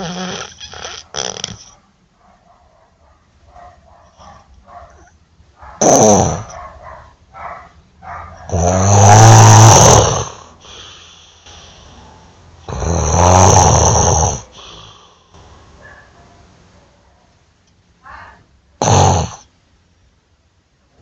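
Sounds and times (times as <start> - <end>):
loud snoring: 0.0 - 1.7, 5.8 - 6.6, 8.5 - 10.9, 12.7 - 15.0, 18.8 - 19.5
quiet breathing: 10.2 - 12.7, 14.4 - 16.2.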